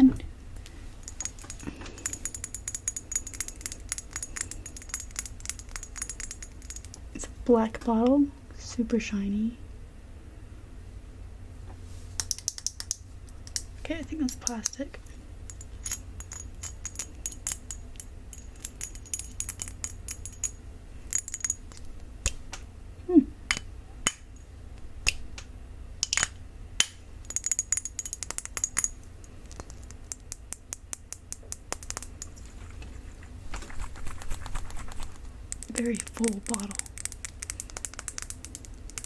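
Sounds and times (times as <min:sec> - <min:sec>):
tapping on a glass bottle: 0:23.5 - 0:24.3.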